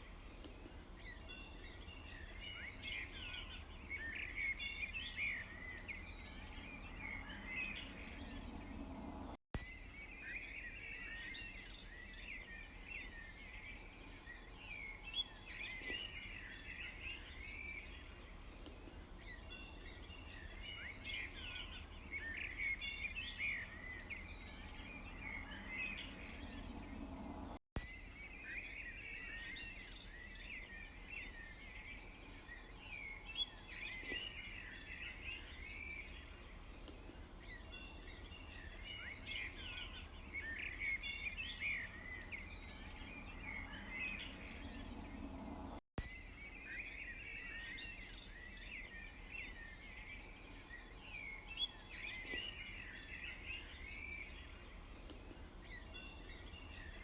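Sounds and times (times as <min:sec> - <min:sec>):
small birds chirping: 0:00.0 - 0:57.0
faint low rumble: 0:05.8 - 0:09.4, 0:23.0 - 0:27.6, 0:41.2 - 0:45.8.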